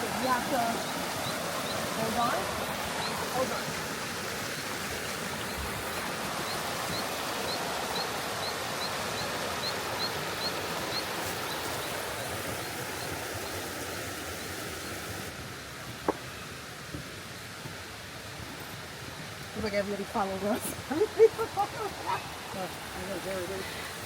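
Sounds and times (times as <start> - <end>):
river water rushing: 0.0 - 24.0.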